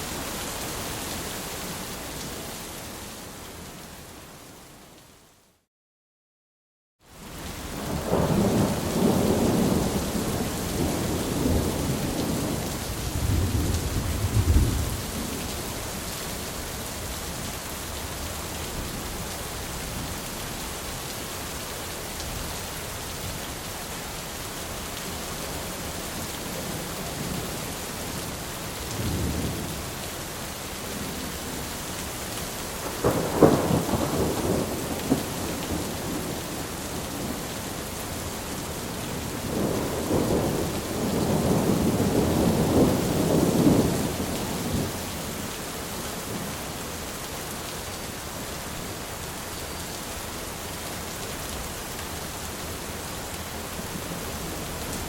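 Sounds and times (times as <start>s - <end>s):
steady rain: 0.0s - 5.7s, 7.0s - 55.0s
rolling thunder: 7.9s - 15.2s, 32.8s - 37.4s, 39.4s - 44.9s.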